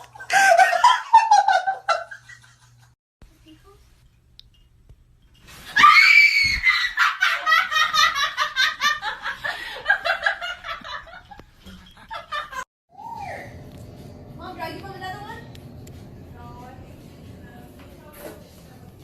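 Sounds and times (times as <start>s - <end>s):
high-pitched scream: 5.8s - 7.0s
hearty laughter: 7.0s - 12.6s.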